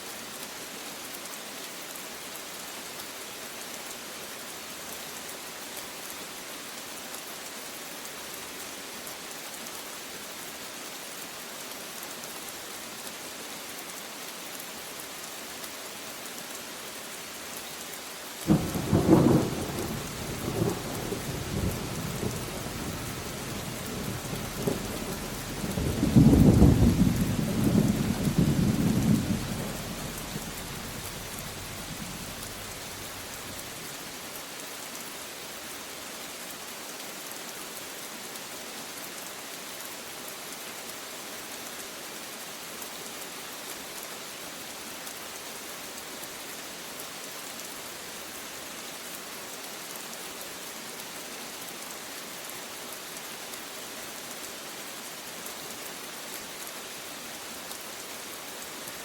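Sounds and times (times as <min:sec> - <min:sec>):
steady rain: 0:00.0 - 0:59.0
thunder rolling: 0:25.8 - 0:33.1.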